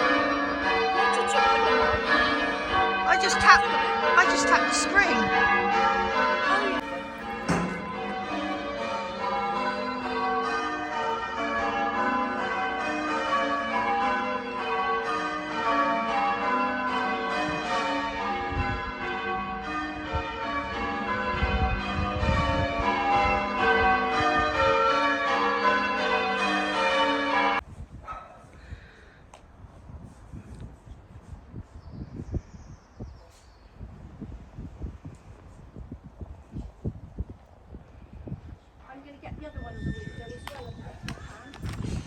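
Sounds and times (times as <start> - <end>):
church bells pealing: 0.0 - 27.6.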